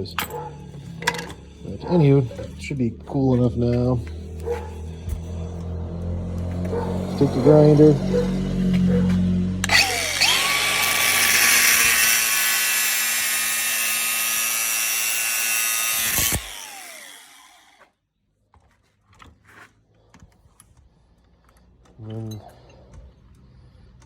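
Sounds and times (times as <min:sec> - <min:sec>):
electric grinder grinding cable: 0:00.0 - 0:17.9
grinder winding down whine: 0:09.6 - 0:17.9.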